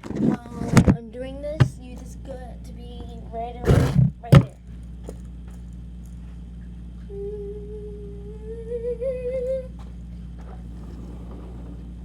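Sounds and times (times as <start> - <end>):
low background hum: 0.0 - 12.0
person humming a held note: 7.1 - 9.8.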